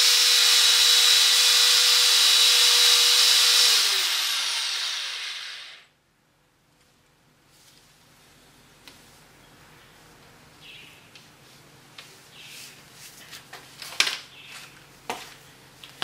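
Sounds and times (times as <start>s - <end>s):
power drill sanding plastic: 0.0s - 5.8s.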